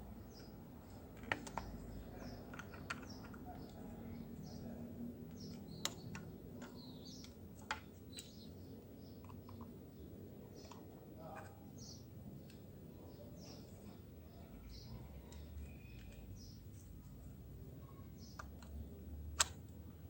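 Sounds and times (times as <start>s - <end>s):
faint bird chirps: 8.1s - 18.7s.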